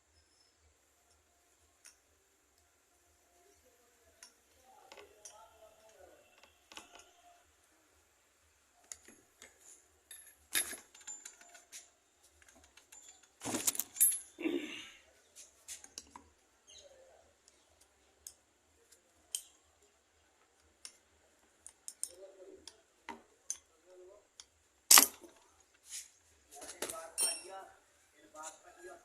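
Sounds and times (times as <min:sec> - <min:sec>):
metallic clicks of tools: 0:01.8 - 0:02.1, 0:04.2 - 0:07.3, 0:08.8 - 0:14.4, 0:17.4 - 0:19.7, 0:20.6 - 0:23.7, 0:24.3 - 0:25.5.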